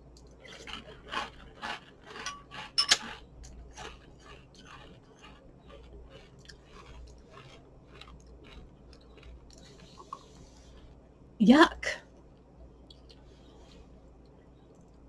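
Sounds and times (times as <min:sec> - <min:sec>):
chewing crunchy cereal: 0:00.0 - 0:11.1.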